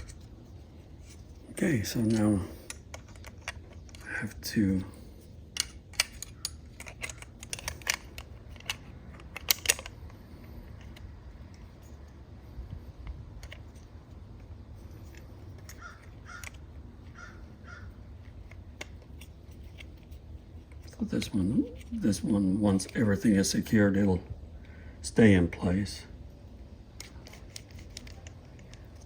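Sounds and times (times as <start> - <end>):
plastic and metal parts clicking: 2.0 - 4.3, 5.2 - 17.2, 17.9 - 21.9, 26.9 - 29.0.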